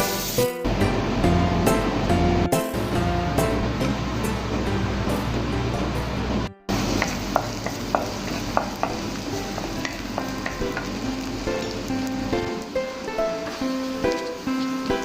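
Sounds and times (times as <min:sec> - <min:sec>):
food sizzling in a pan: 0:00.0 - 0:01.2, 0:06.7 - 0:15.0
background music: 0:00.0 - 0:06.7, 0:08.6 - 0:15.0.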